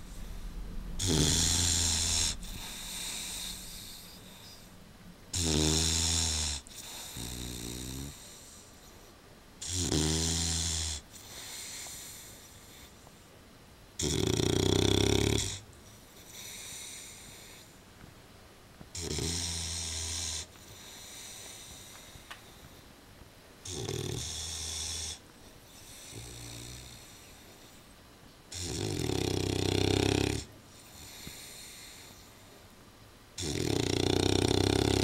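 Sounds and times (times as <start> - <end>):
dog soft breath: 0.0 - 4.8
dog snoring: 1.0 - 4.6, 5.3 - 8.7, 9.6 - 12.9, 14.0 - 15.6, 16.2 - 17.7, 18.9 - 22.2, 23.6 - 27.8, 28.5 - 32.4, 33.4 - 35.0.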